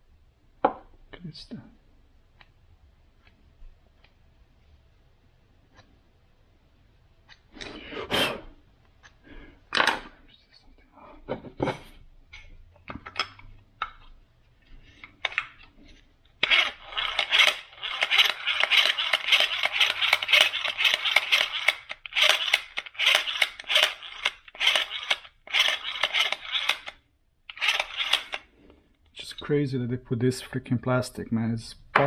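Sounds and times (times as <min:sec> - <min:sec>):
rapid ratchet-like clicking: 0:16.4 - 0:28.4.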